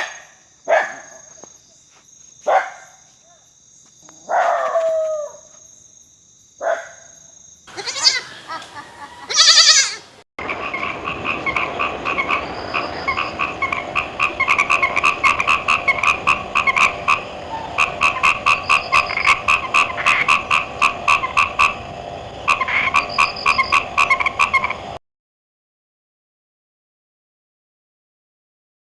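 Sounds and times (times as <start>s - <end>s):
frogs croaking: 5.2s - 25.0s.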